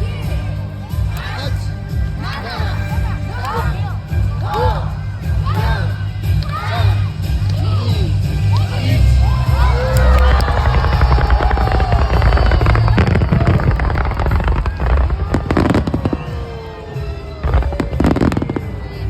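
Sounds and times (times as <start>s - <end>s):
music playing: 0.0s - 19.0s
fireworks bursting and crackling: 9.7s - 19.0s.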